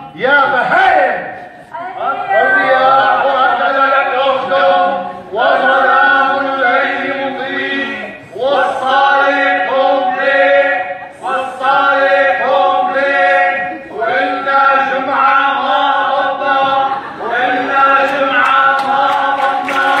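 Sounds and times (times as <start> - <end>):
group singing without instruments: 1.8 - 20.0.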